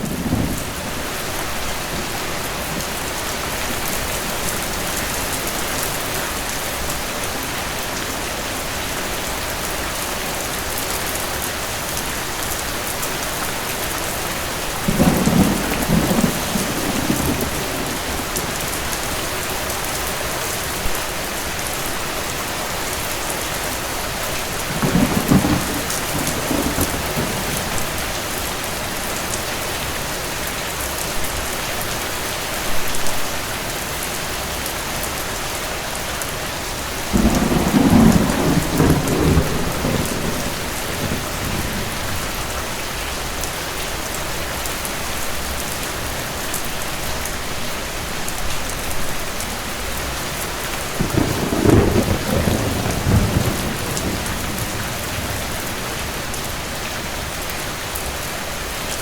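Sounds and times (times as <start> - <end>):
distant thunder rumbling: 0.0 - 4.9, 14.7 - 19.6, 24.4 - 28.8, 37.1 - 42.7, 50.8 - 56.6
steady rain: 0.0 - 59.0.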